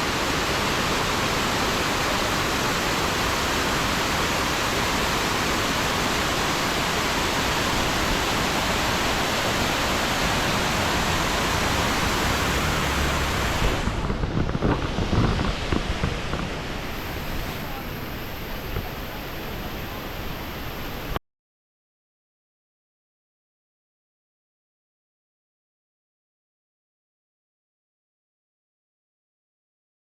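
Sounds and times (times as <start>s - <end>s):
waterfall rushing: 0.0s - 14.3s, 14.9s - 21.2s.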